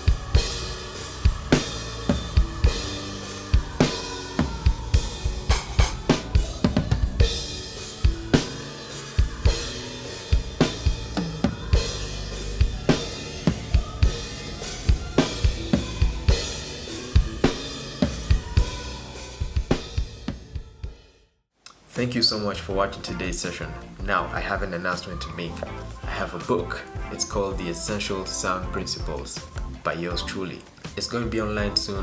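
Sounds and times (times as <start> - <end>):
snare drum: 0.0 - 9.4, 26.1 - 32.0
cymbals: 0.0 - 21.0, 22.8 - 32.0
kick drum: 4.7 - 7.4.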